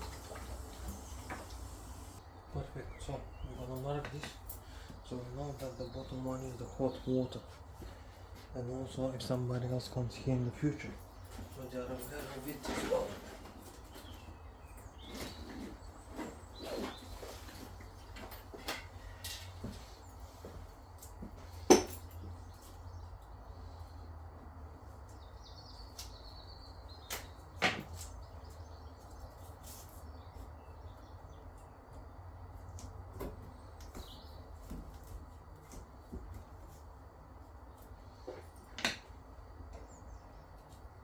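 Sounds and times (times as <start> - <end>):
steady low hum: 0.0 - 12.5.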